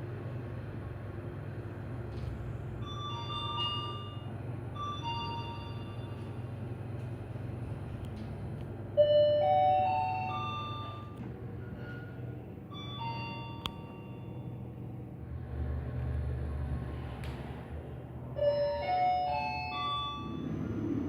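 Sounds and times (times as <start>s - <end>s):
rising elevator chime: 2.8s - 6.3s, 9.0s - 14.7s, 18.4s - 21.0s.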